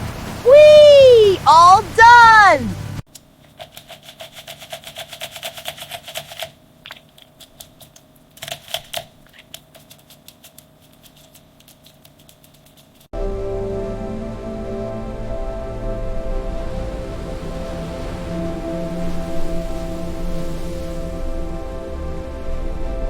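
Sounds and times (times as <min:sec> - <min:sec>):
fast mechanical clicks: 0:03.1 - 0:13.1.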